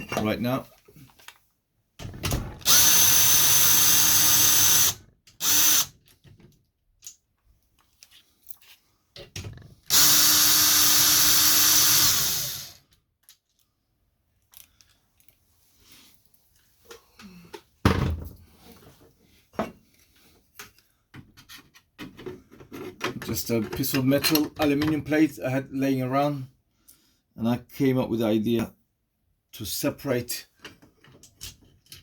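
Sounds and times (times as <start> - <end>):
power drill running: 2.6 - 6.0, 9.9 - 12.8
handling clicks and knocks: 20.6 - 25.1.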